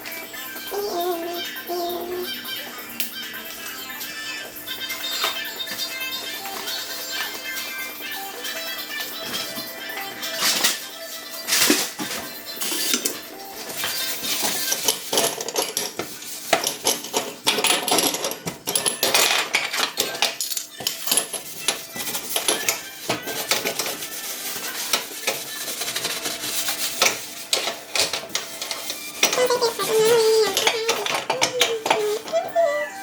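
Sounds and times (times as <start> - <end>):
dishes clinking and clattering: 9.2 - 33.0.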